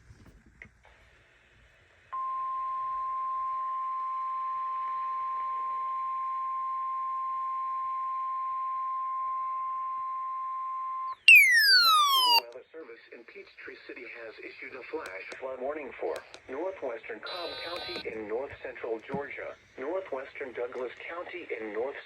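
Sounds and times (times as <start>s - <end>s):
faint radio hiss: 0.0s - 2.2s, 11.8s - 22.0s
steady alarm tone: 11.2s - 12.4s.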